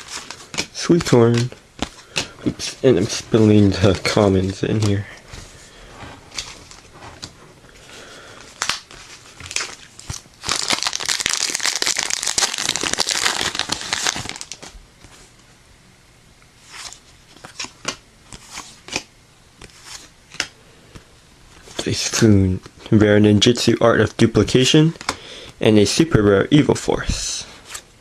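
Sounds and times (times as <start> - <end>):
foil wrapper tearing and crinkling: 8.6 - 14.7.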